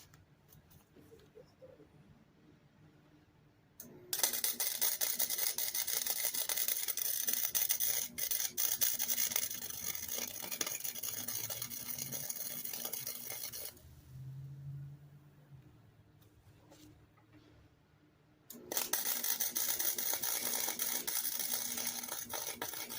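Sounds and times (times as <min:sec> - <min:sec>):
welding arc crackling: 0:04.1 - 0:13.8, 0:18.5 - 0:22.9.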